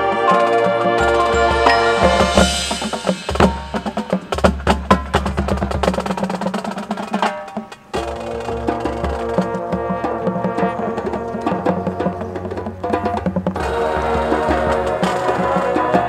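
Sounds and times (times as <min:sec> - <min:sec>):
wood-block strikes: 0:00.0 - 0:10.1
drum strikes: 0:00.0 - 0:16.0
marching band music: 0:00.0 - 0:16.0.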